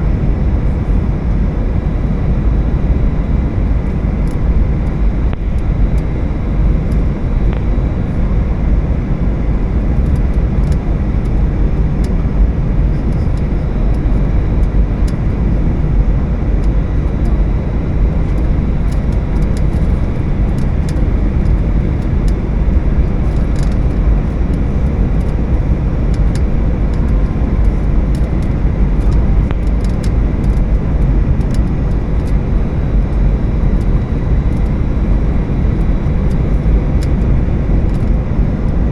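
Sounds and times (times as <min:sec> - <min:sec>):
airplane cabin engine rush: 0:00.0 - 0:38.9
faint ticks and rattles: 0:18.3 - 0:38.8.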